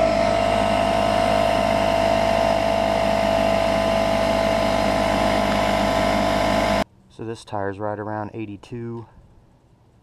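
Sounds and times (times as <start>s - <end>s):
air compressor whining: 0.0s - 6.8s.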